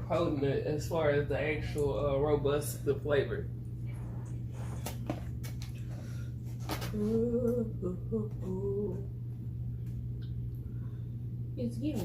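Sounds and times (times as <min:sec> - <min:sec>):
steady low hum: 0:00.0 - 0:12.0
person humming: 0:06.9 - 0:09.2.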